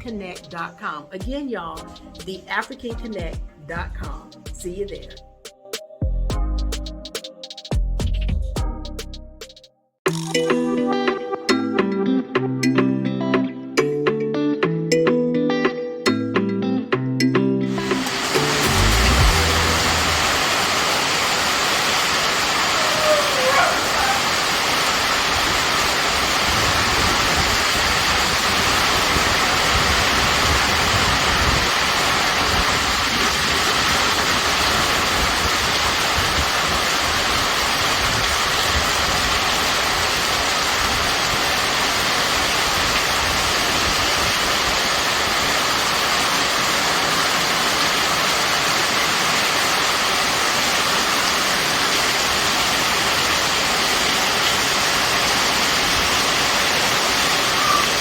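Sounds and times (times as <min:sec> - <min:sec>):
heavy rain pouring: 0:17.7 - 0:58.0
low rumble: 0:18.5 - 0:20.8.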